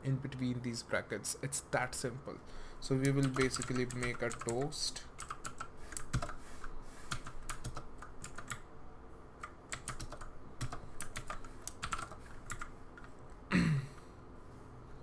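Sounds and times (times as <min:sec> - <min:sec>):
typing on computer keyboard: 0:03.0 - 0:06.4, 0:07.1 - 0:08.6, 0:09.4 - 0:13.2.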